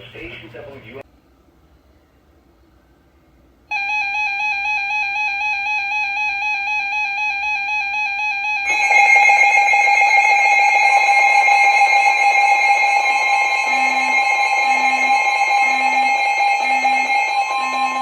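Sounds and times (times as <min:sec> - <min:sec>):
electronic alarm tone with warble: 0:03.7 - 0:18.0
steady alert tone: 0:08.7 - 0:18.0.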